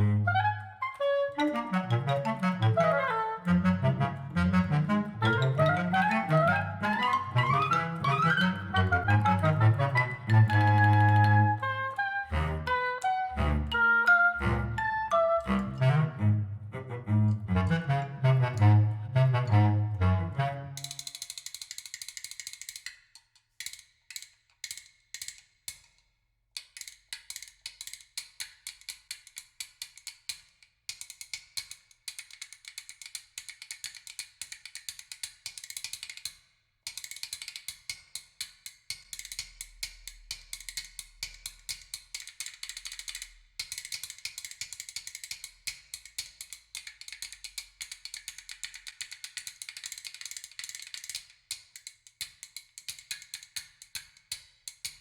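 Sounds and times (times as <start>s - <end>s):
rapid dry percussion clicks: 20.8s - 26.0s, 26.6s - 55.0s.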